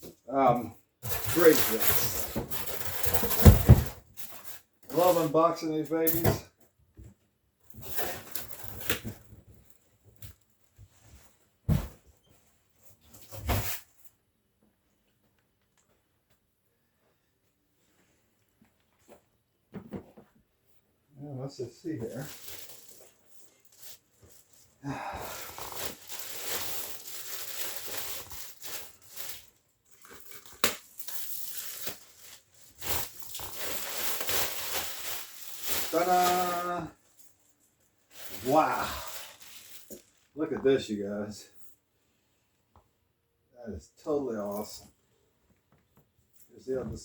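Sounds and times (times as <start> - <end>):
knocks and rustles of packing: 1.0 - 5.2
packing material crinkling: 1.1 - 3.7, 21.8 - 40.4.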